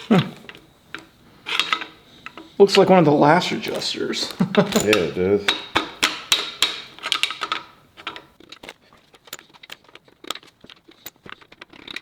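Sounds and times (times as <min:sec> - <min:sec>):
metal parts clinking: 0:00.0 - 0:12.0
light taps and rustling: 0:03.6 - 0:11.5.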